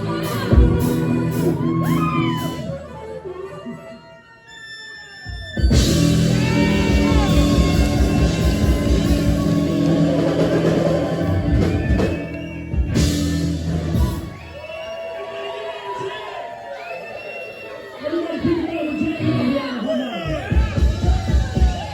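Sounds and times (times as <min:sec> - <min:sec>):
live rock band playing: 0:00.0 - 0:02.7, 0:05.6 - 0:14.4.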